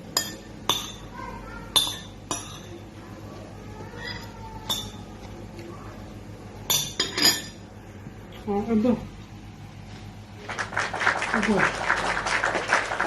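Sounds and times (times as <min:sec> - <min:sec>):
tableware clinking: 0:00.1 - 0:01.1, 0:01.7 - 0:02.8, 0:04.0 - 0:05.0, 0:06.7 - 0:07.6.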